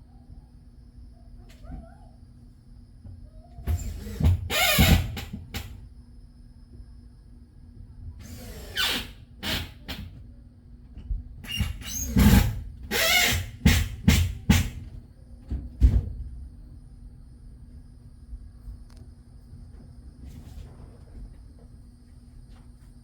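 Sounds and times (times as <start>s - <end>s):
power drill whining in bursts: 3.7s - 5.3s, 8.2s - 9.8s, 11.8s - 13.6s.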